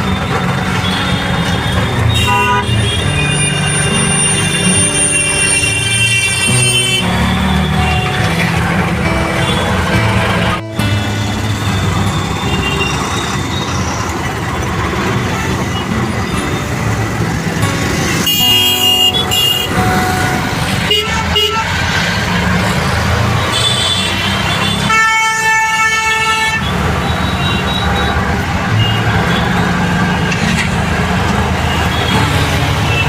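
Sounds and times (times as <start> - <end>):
vehicle horns honking: 0.0 - 30.8, 31.5 - 33.0
engine and road rumble: 0.0 - 33.0.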